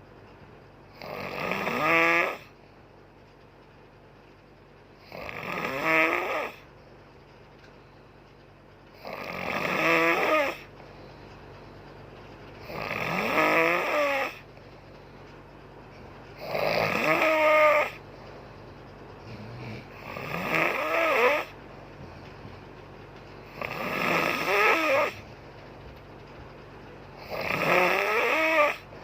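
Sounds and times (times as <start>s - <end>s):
woman snoring: 1.0s - 2.5s, 5.0s - 6.7s, 9.0s - 10.7s, 12.7s - 14.5s, 16.4s - 18.0s, 19.2s - 21.6s, 23.5s - 25.3s, 27.2s - 28.9s.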